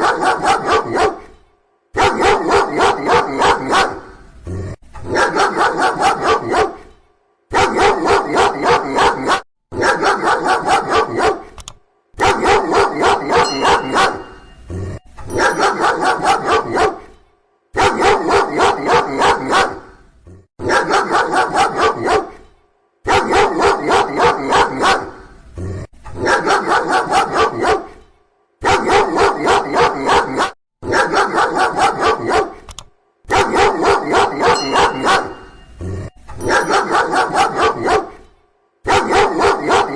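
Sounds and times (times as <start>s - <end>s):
dog barking loudly: 0.0s - 1.4s, 2.0s - 4.2s, 5.0s - 6.9s, 7.5s - 11.6s, 12.2s - 14.6s, 15.3s - 17.2s, 17.8s - 20.0s, 20.6s - 22.4s, 23.0s - 25.3s, 26.2s - 28.0s, 28.6s - 32.7s, 33.3s - 35.7s, 36.4s - 38.2s, 38.8s - 39.9s.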